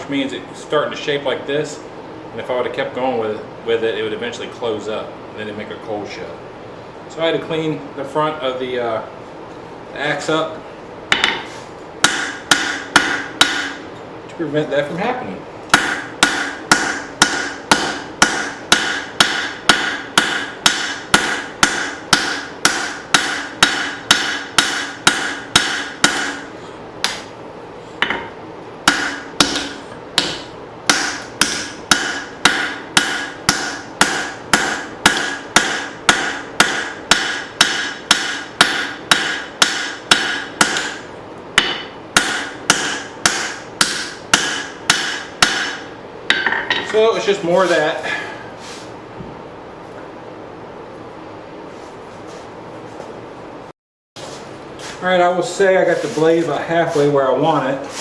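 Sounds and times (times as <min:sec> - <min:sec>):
hammer striking steel on anvil: 0:11.1 - 0:13.8, 0:15.7 - 0:27.3, 0:28.0 - 0:47.0.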